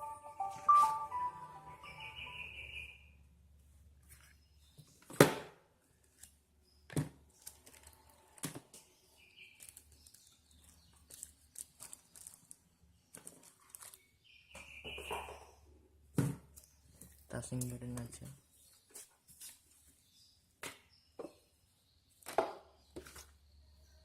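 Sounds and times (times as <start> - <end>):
short high beep: 0.0 - 3.0.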